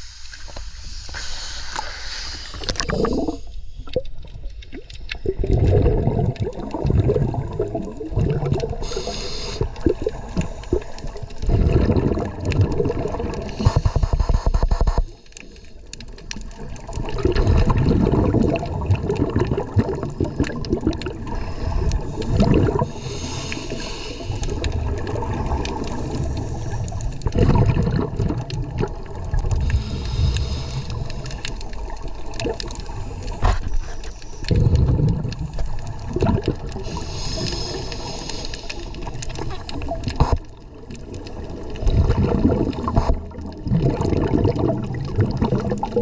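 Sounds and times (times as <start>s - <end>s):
diver exhaling bubbles: 0.4s - 4.1s, 5.2s - 14.6s, 16.5s - 46.0s
regulator hissing: 36.9s - 39.1s.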